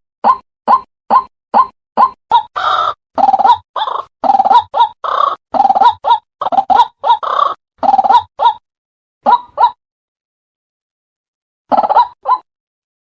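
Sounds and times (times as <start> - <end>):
waterhen croaking calls: 0.3 - 8.6.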